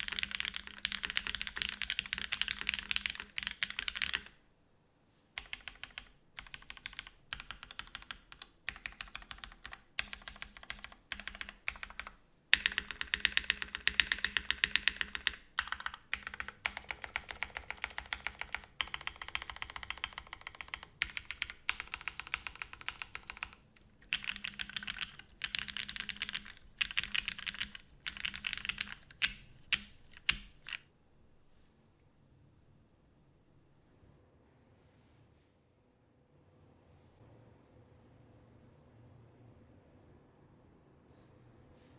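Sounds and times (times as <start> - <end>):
mechanical keyboard typing: 0.0 - 4.4, 5.4 - 30.9.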